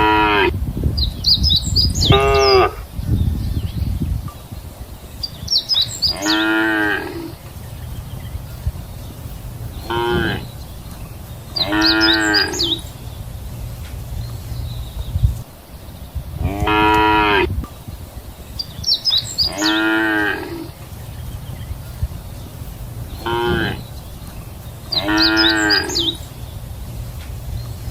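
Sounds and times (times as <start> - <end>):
cows mooing: 0.0 - 0.6, 6.0 - 7.5, 9.8 - 10.6, 11.5 - 13.0, 16.4 - 17.5, 19.4 - 20.8, 23.2 - 23.9, 24.9 - 26.3.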